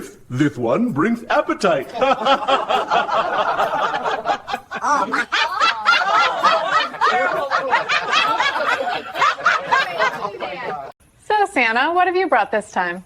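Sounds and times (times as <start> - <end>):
person giggling: 3.6 - 10.6.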